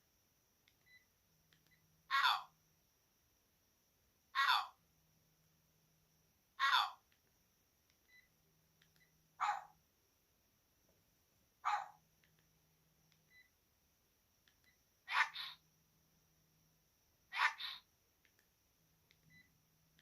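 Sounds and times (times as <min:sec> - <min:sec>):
faint beeps: 0:00.7 - 0:02.0, 0:08.0 - 0:09.3, 0:13.1 - 0:13.6, 0:19.1 - 0:20.0
harsh bark-like phone alert bursts: 0:09.4 - 0:09.8, 0:11.6 - 0:12.0, 0:15.1 - 0:15.6, 0:17.3 - 0:17.8.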